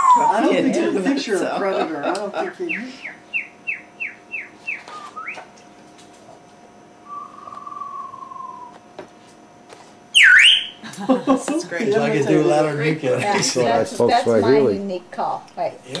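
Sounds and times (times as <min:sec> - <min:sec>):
parrot whistling: 0:02.6 - 0:05.5, 0:07.0 - 0:08.8, 0:10.1 - 0:10.8.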